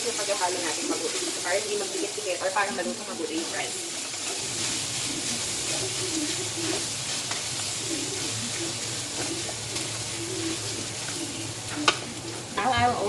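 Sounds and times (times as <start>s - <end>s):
food being stirred: 0.0s - 12.7s
food sizzling in a pan: 0.0s - 13.0s.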